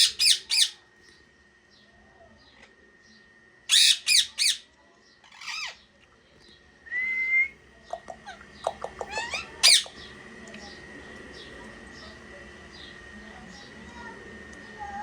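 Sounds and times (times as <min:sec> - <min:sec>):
parrot chirps: 0:00.0 - 0:00.8, 0:03.7 - 0:05.8, 0:08.2 - 0:10.1
parrot squawking: 0:00.0 - 0:00.8, 0:03.7 - 0:04.6, 0:05.3 - 0:05.8, 0:08.2 - 0:10.0.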